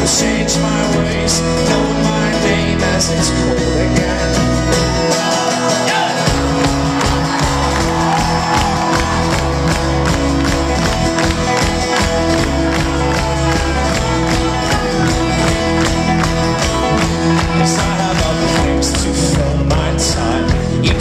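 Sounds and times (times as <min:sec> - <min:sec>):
folk-rock band playing: 0:00.0 - 0:21.0
strummed acoustic guitar: 0:00.0 - 0:21.0
crowd cheering: 0:04.7 - 0:21.0
steady kick-drum beat: 0:06.2 - 0:21.0.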